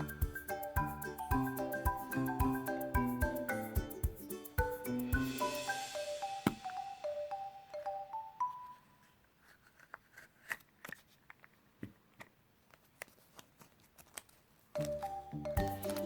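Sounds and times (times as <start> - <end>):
foil crinkling: 12.6 - 14.8.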